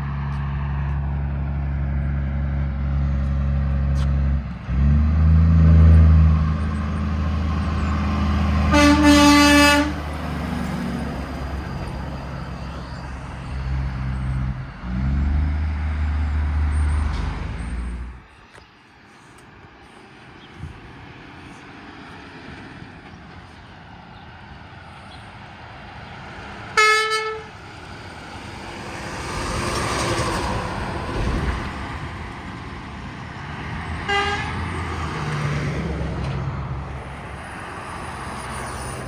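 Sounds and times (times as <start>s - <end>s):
road traffic passing: 0.0s - 39.0s
vehicle horn blasts: 8.7s - 10.0s, 26.8s - 27.6s, 34.1s - 34.6s.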